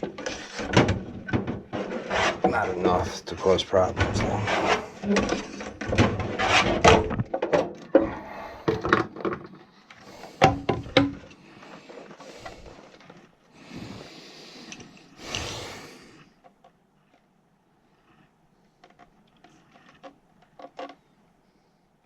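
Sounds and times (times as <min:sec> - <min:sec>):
scraping: 0:00.0 - 0:13.4.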